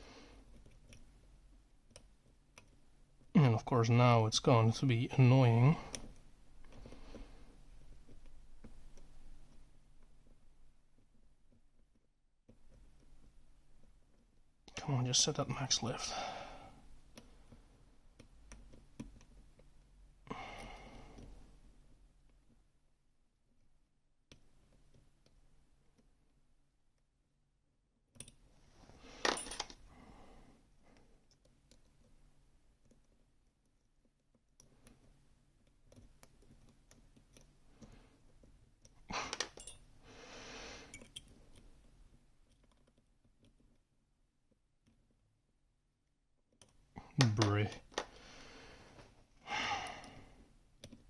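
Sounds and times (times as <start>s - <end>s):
breathy sigh: 20.3s - 21.3s, 48.2s - 50.4s
lock picks clicking: 38.8s - 39.9s, 40.9s - 41.7s
lock pick clicks: 40.9s - 41.3s.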